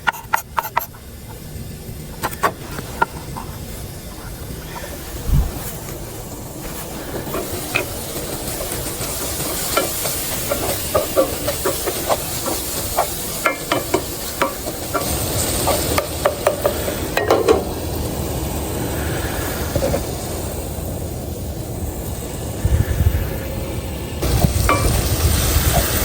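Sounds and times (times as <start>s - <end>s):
utensil scraping cooking pot: 0.0s - 17.8s
sizzling hiss: 0.0s - 26.0s.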